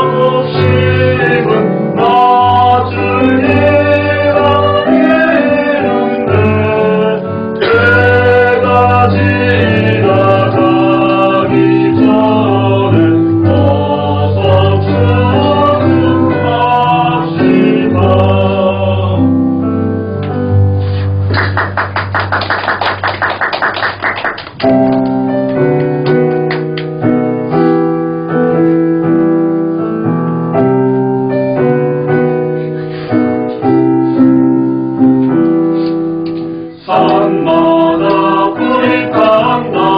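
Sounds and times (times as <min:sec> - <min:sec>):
church choir singing a hymn: 0:00.0 - 0:19.3, 0:36.8 - 0:39.9
piano and keyboard accompaniment: 0:00.0 - 0:39.9.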